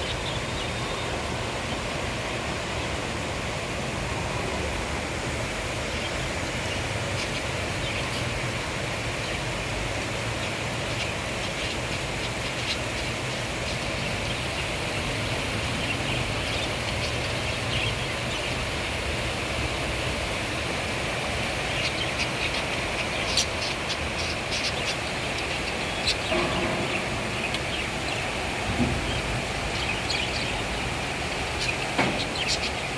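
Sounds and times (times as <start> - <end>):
rainfall hiss: 0.0 - 32.9
bird chirps: 31.6 - 32.9.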